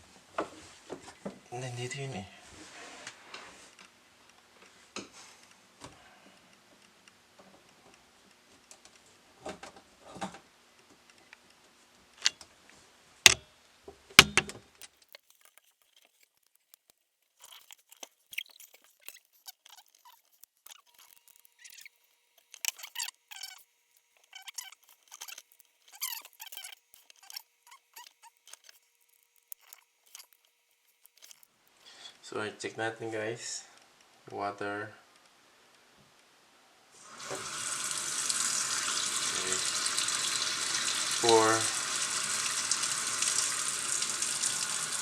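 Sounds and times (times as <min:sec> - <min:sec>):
faint squeaky ticks: 0:14.8 - 0:32.1.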